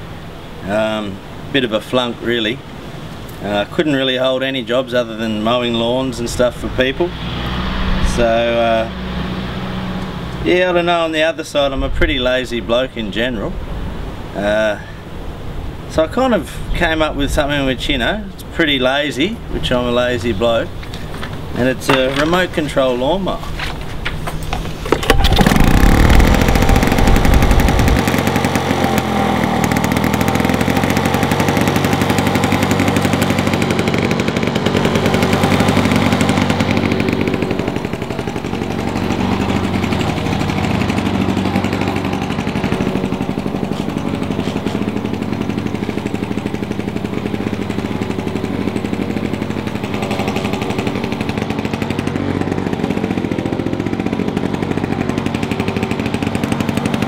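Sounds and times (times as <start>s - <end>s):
two-stroke lawn mower engine: 0.0s - 12.9s, 13.6s - 57.0s.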